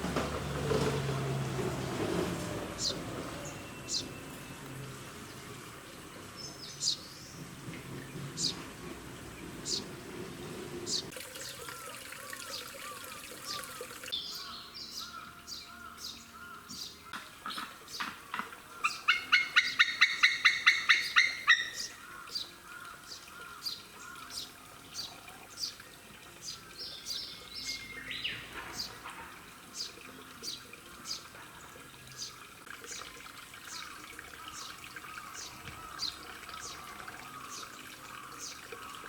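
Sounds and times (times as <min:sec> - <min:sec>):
sea eagle calling: 0:18.8 - 0:21.9.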